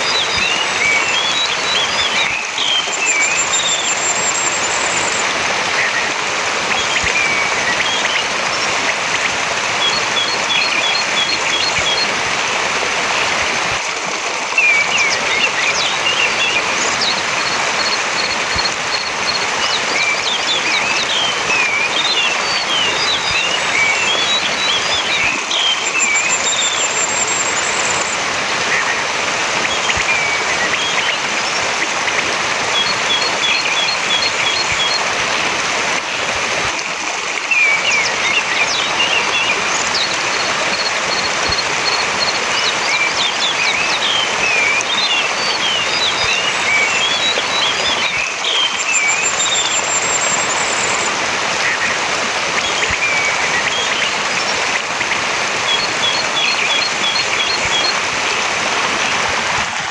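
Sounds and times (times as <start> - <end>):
running water: 0.0 - 59.9
thrush singing: 14.6 - 35.2.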